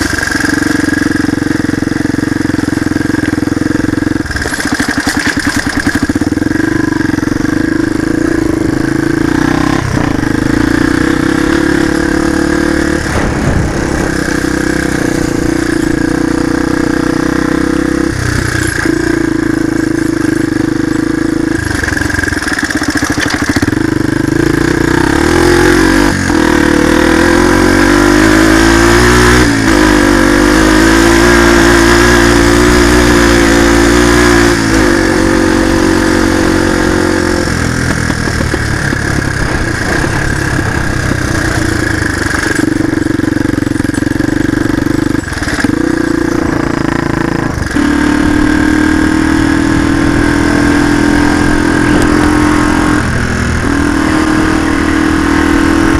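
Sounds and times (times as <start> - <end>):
motorcycle engine changing gear: 0.0 - 55.9
wind noise: 7.2 - 16.5, 33.8 - 44.2, 45.2 - 55.9.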